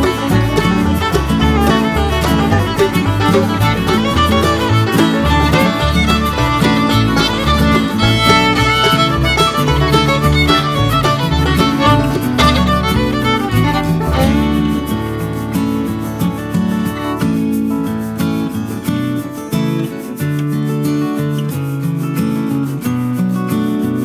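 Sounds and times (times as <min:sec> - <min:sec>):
bass line: 0:00.0 - 0:17.2
bluegrass fiddle music: 0:00.0 - 0:18.1.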